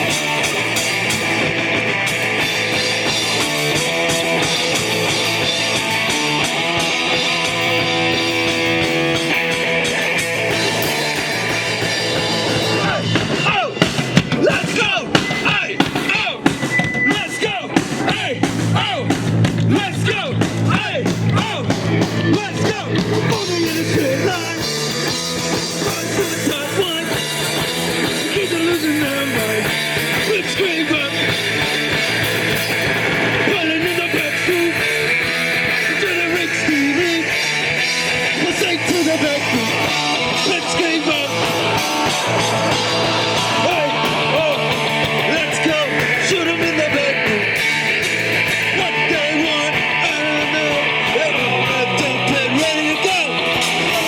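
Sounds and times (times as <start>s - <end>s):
rock band playing punk song: 0.0s - 54.0s
person singing: 17.0s - 31.8s, 38.3s - 47.6s, 48.7s - 54.0s.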